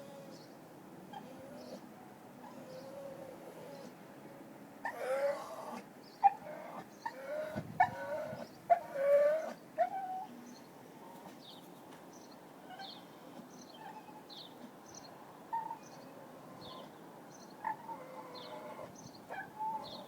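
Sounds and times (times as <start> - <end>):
dog whining and crying: 1.1 - 1.8, 2.4 - 4.0, 17.6 - 20.0.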